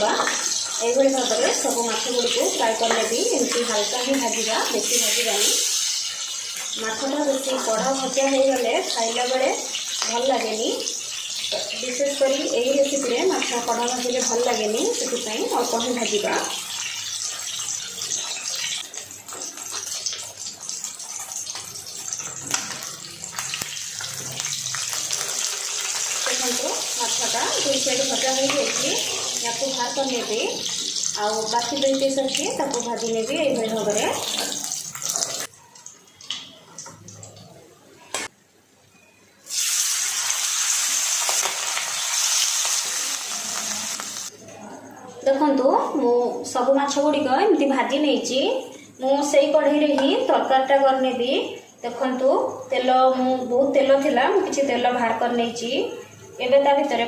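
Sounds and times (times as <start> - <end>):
fish sizzling in hot oil: 0.0 - 37.3, 39.4 - 44.3
oil crackling and popping: 0.0 - 37.5, 39.5 - 44.3.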